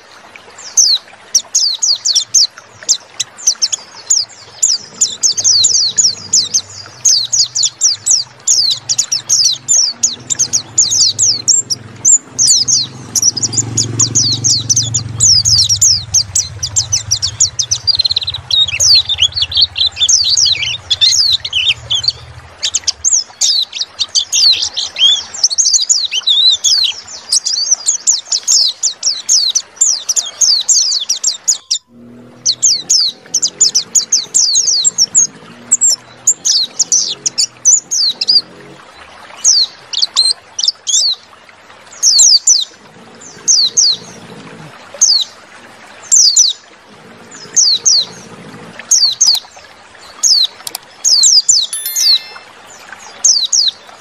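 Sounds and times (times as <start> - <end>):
birds twittering song: 0.0 - 54.0.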